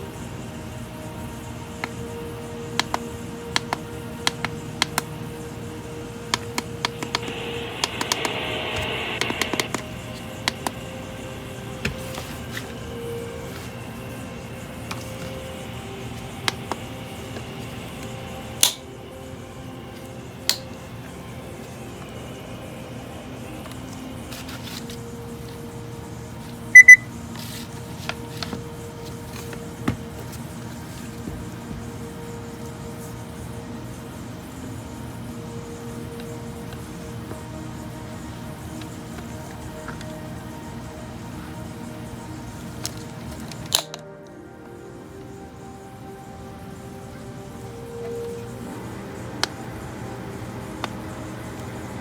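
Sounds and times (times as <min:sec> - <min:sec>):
hiss: 0:00.0 - 0:43.9
steady hum: 0:00.0 - 0:52.0
alarm clock beeps: 0:26.7 - 0:27.1.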